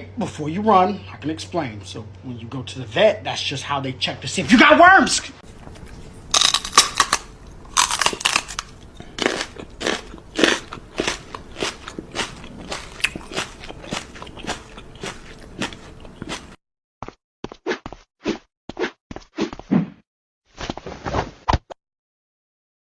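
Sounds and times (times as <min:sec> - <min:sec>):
chewing crunchy food: 0:05.4 - 0:16.6.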